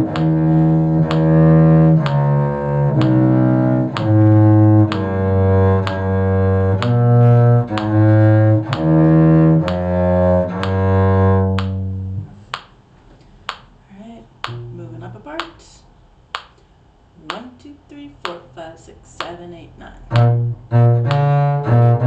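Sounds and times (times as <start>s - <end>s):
cello bowed notes: 0.0s - 12.6s, 20.0s - 22.0s
metronome clicking: 0.0s - 12.8s, 14.4s - 15.6s, 16.3s - 16.7s, 17.3s - 17.6s, 20.1s - 22.0s.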